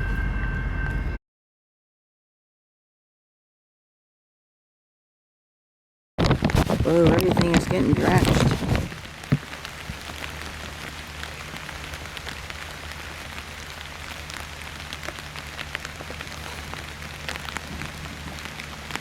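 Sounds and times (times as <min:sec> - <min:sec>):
heavy rain: 0:06.2 - 0:19.0
raindrops ticking near microphone: 0:06.2 - 0:19.0
steady low hum: 0:06.7 - 0:19.0.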